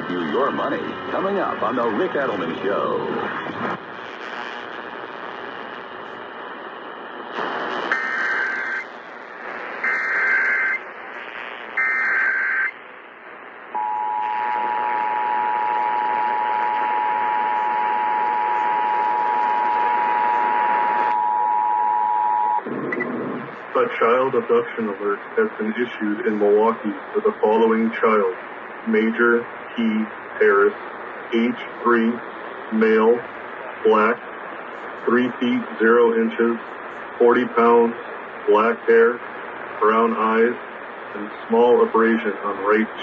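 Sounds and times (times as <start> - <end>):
radio hiss: 0.0 - 43.0.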